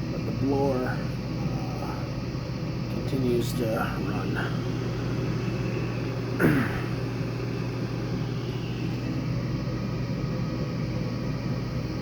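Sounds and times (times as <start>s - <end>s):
furnace blower humming: 0.0s - 12.0s.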